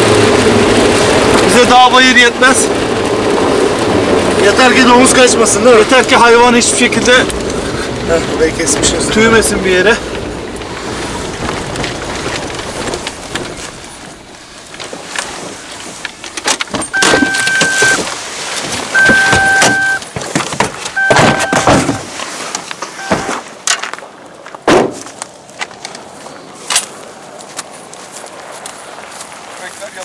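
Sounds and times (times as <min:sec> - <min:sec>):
vehicle engine off-road: 0:00.0 - 0:30.0
knocks and rattles: 0:10.0 - 0:22.2
electronic tone: 0:16.9 - 0:18.0, 0:18.9 - 0:20.0, 0:21.0 - 0:22.0, 0:23.0 - 0:23.4.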